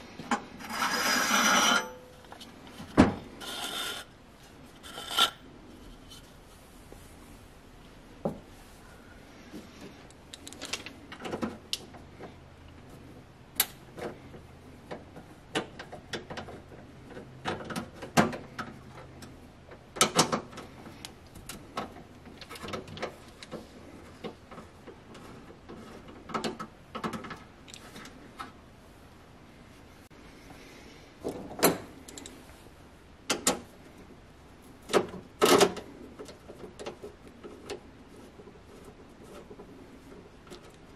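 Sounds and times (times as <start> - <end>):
tools and metal parts clicking: 32.1 - 32.4.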